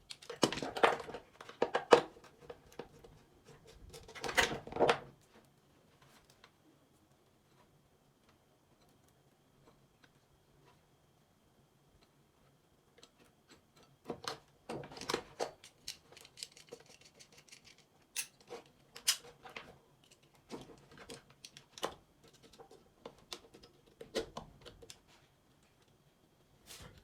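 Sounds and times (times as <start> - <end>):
small hard objects clicking and scraping: 14.9 - 23.7.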